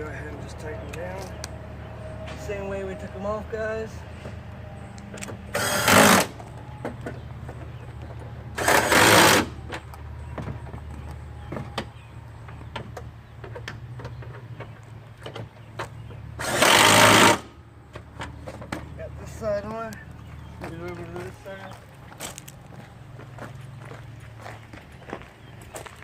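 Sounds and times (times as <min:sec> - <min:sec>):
power driver tightening bolts: 0:05.2 - 0:06.4.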